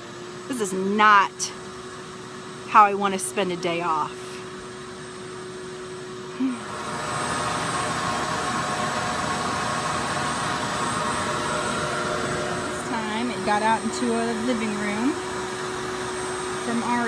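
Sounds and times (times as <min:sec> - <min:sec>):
vacuum and fans droning: 0:00.0 - 0:17.0.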